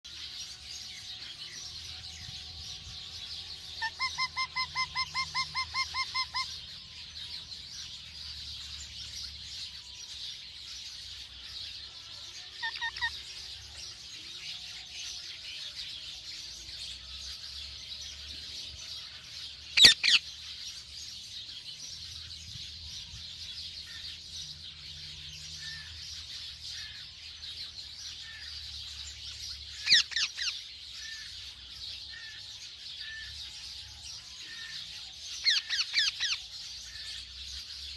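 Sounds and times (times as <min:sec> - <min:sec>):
parrots calling: 0:03.7 - 0:06.6, 0:12.4 - 0:13.3, 0:19.8 - 0:20.3, 0:29.8 - 0:31.3, 0:35.4 - 0:37.2.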